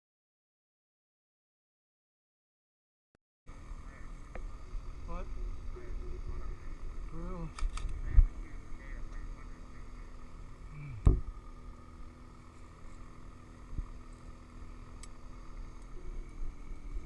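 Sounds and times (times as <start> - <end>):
light click: 7.5 - 8.0.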